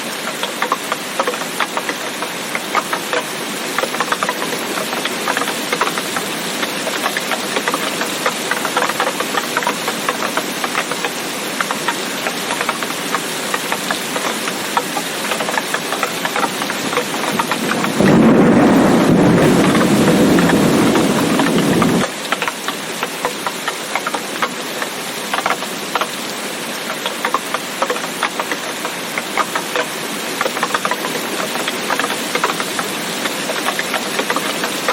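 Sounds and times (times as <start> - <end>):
rain pattering: 0.0 - 34.9
deep rumble: 16.8 - 22.0.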